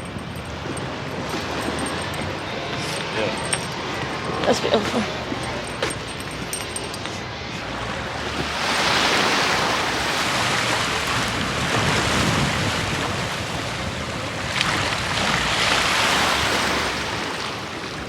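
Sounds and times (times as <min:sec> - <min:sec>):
wind on microphone: 0:00.0 - 0:18.0
ocean surf breaking on beach: 0:07.7 - 0:18.0.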